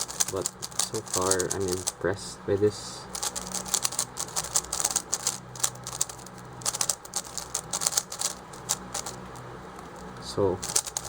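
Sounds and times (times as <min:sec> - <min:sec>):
plastic puzzle cube clicking: 0:00.0 - 0:02.0, 0:03.1 - 0:09.2, 0:10.6 - 0:11.0.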